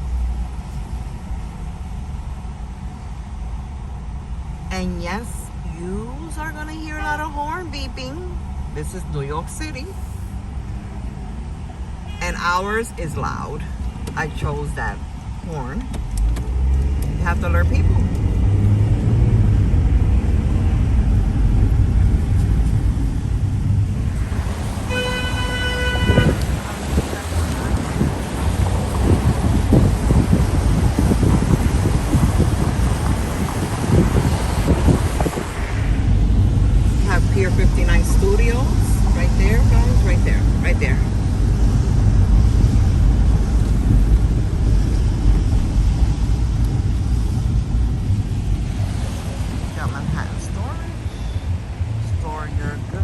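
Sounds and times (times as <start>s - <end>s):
vehicle driving rumble: 0.0s - 53.0s
car horn: 6.8s - 7.5s, 12.0s - 12.6s, 24.6s - 28.0s.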